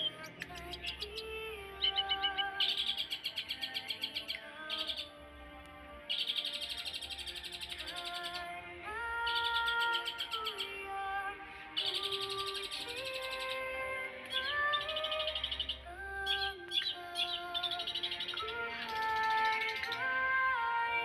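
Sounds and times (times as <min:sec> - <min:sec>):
bird singing rapid high notes: 0:00.0 - 0:05.1, 0:06.1 - 0:08.5, 0:09.2 - 0:10.8, 0:11.7 - 0:13.6, 0:14.2 - 0:20.0
soft background music: 0:00.0 - 0:21.0.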